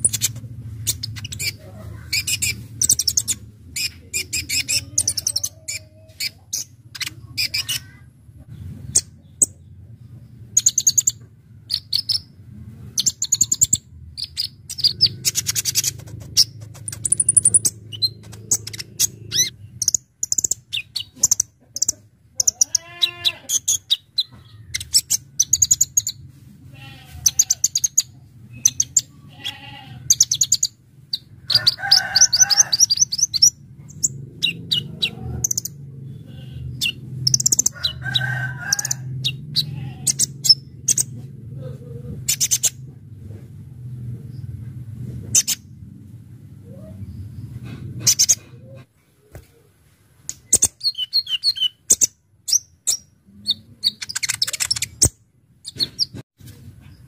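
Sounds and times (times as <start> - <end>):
bird chirping and trilling: 0.0 - 8.0, 10.5 - 12.3, 13.0 - 26.2, 26.8 - 41.1, 42.3 - 42.8, 50.4 - 56.2.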